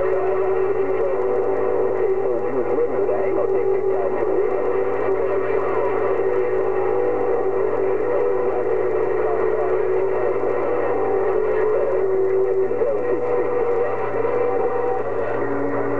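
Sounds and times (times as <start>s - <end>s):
garbled radio signals: 0.0s - 15.9s
radio static with hum: 0.0s - 15.9s.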